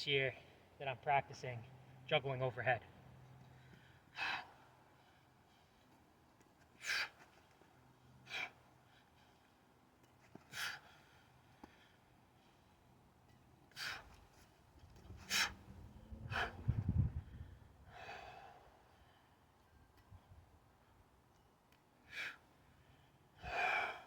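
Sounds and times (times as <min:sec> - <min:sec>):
man breathing forcefully: 0:03.6 - 0:05.8, 0:15.3 - 0:19.3, 0:22.0 - 0:24.0.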